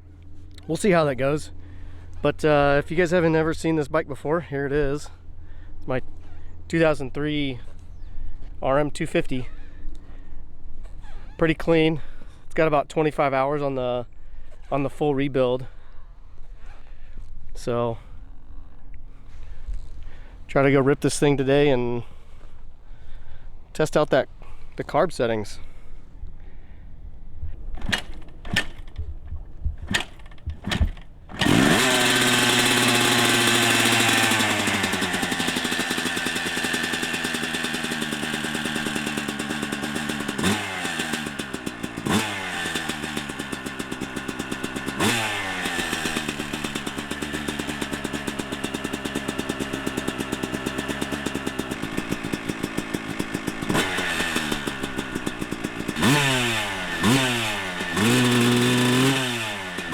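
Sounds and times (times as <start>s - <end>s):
motorcycle engine revving and idling: 0.0s - 13.0s, 15.6s - 59.9s
motorcycle kick starter: 0.1s - 3.6s, 18.1s - 21.2s, 25.7s - 59.9s.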